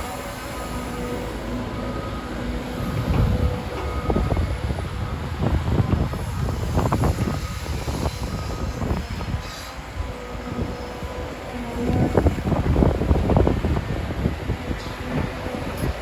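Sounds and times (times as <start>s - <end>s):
excavator rumbling: 0.0s - 16.0s
excavator clanks and knocks: 1.7s - 8.3s, 11.8s - 16.0s.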